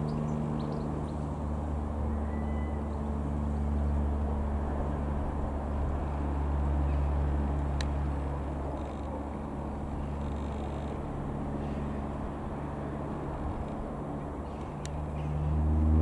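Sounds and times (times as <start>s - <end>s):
light aircraft engine drone: 0.0s - 16.0s.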